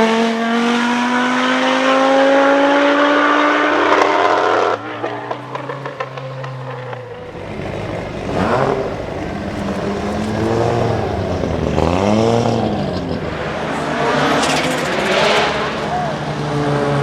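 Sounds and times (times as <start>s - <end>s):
turbocharged car engine revving: 7.1s - 15.8s.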